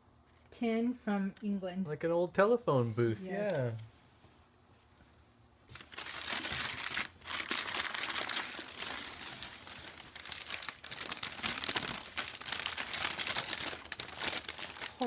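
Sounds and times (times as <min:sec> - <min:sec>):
gift wrapping crinkling: 0:05.7 - 0:15.0.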